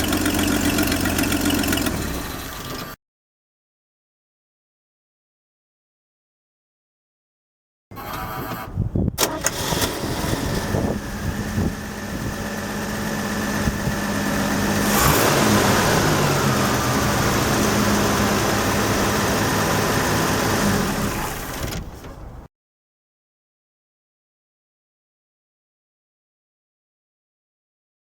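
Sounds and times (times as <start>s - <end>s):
car engine running: 0.0s - 2.9s, 10.1s - 21.6s.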